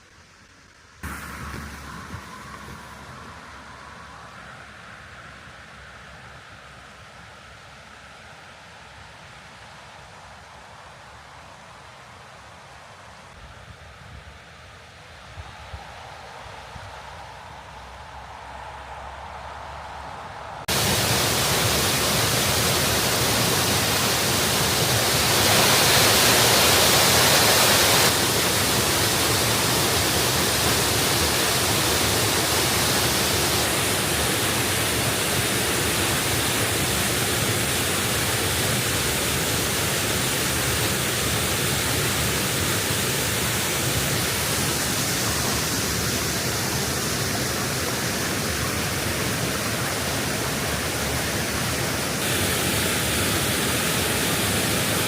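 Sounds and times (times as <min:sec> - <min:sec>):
waterfall rushing: 0:01.0 - 0:04.8, 0:17.2 - 0:55.0.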